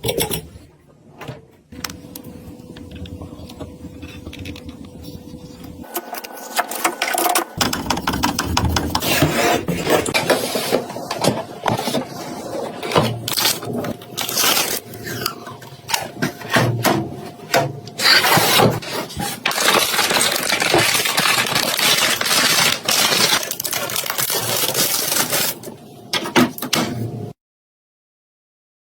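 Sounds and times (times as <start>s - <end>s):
computer parts clicking and scraping: 2.8s - 16.8s, 17.9s - 25.7s.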